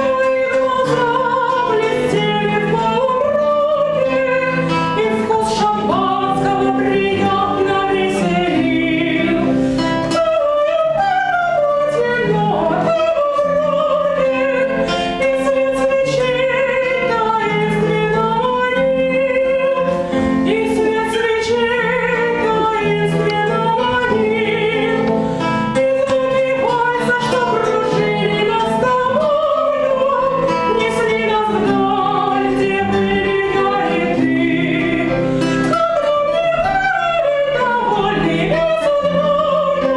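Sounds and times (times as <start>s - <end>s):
instrumental accompaniment: 0.0s - 39.9s
woman singing with vibrato: 0.0s - 39.9s.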